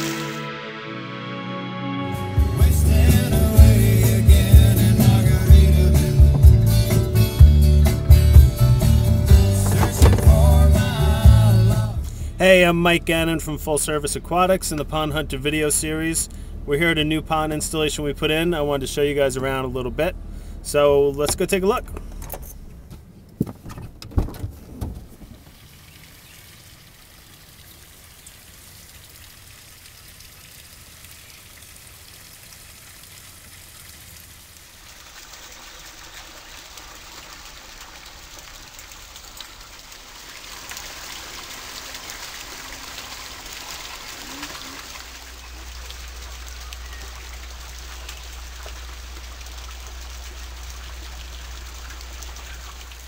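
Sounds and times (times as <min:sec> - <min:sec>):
pond waterfall splashing: 0:00.0 - 0:00.5, 0:02.7 - 0:16.6, 0:25.0 - 0:53.0
low steady rumble: 0:02.4 - 0:25.9, 0:42.4 - 0:53.0.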